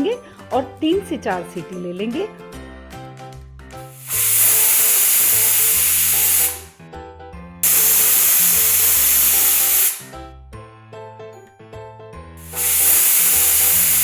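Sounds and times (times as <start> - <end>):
light background music: 0.0 - 14.0
pressure cooker whistle hissing: 3.9 - 6.7, 7.6 - 10.2, 12.4 - 14.0.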